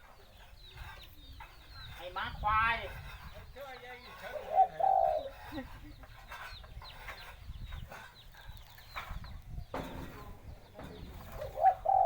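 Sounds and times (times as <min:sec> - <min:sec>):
dove cooing: 0:04.2 - 0:05.5, 0:11.2 - 0:12.0
knock: 0:09.2 - 0:10.2.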